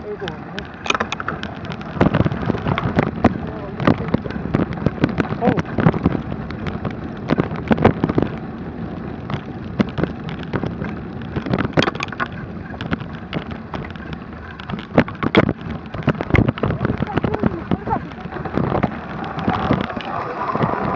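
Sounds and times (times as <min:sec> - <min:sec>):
bike knocks and rattles: 0:00.0 - 0:20.9
tyre and wind rush: 0:00.0 - 0:20.9.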